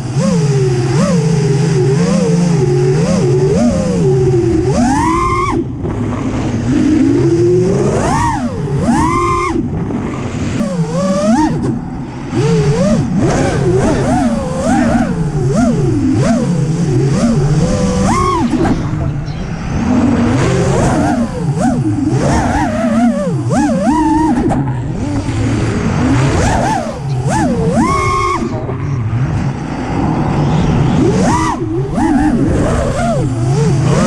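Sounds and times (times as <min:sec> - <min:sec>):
drone motors and propellers whining: 0:00.0 - 0:34.0.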